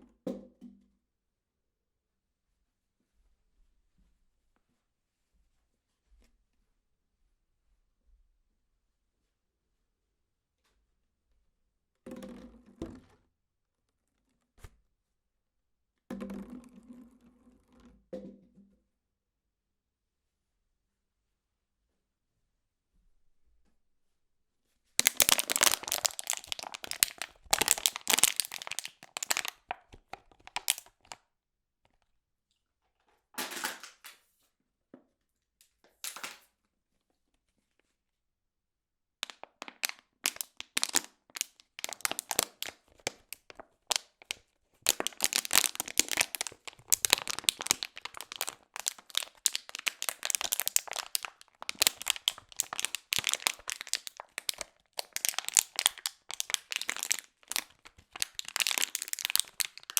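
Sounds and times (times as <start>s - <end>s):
drink container being crushed: 25.0s - 31.2s, 39.2s - 59.9s.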